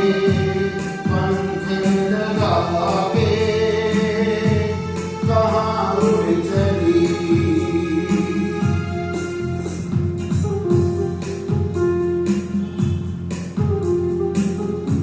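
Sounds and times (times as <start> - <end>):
person singing: 0.0 - 9.7
music backing with steady beat: 0.0 - 15.0.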